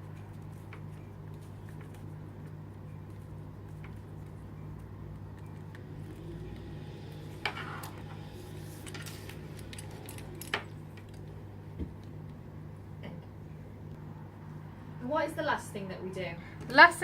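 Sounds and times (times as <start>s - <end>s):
low hum: 0.0s - 15.2s.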